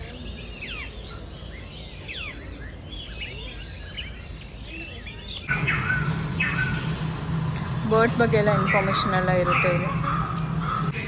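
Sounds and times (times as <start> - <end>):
small birds chirping: 0.0 - 11.0
low steady hum: 5.5 - 11.0.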